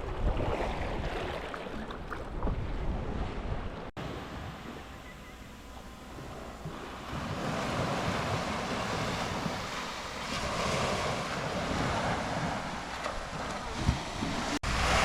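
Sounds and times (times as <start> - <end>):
waves washing onto beach: 6.0 - 15.0.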